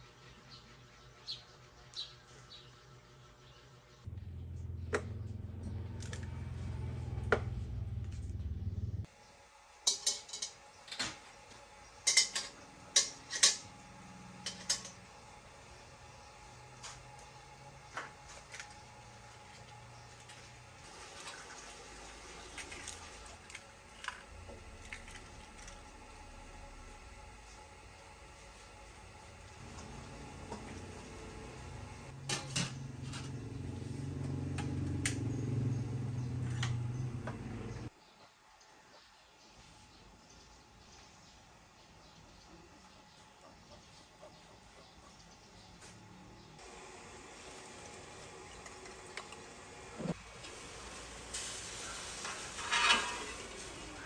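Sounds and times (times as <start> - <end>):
low machine hum: 0.0 - 10.9, 11.7 - 37.9
cutlery clinking against dishes: 9.9 - 11.1, 12.1 - 13.7, 14.5 - 15.0, 52.2 - 53.7.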